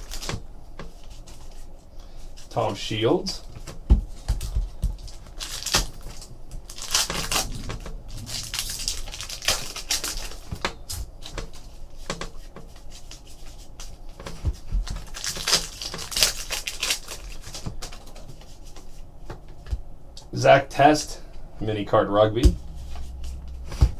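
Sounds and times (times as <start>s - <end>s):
wrapper crinkling: 5.2s - 10.6s, 14.8s - 18.2s.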